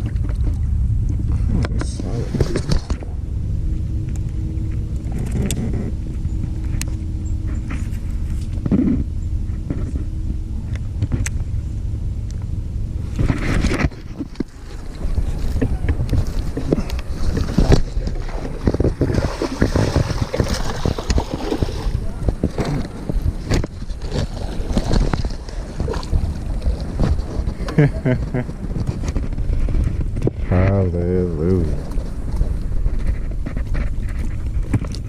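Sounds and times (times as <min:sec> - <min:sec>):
steady low hum: 0:00.0 - 0:35.0
wind buffeting microphone: 0:00.0 - 0:35.0
knocks and bumps against boat: 0:13.0 - 0:30.7.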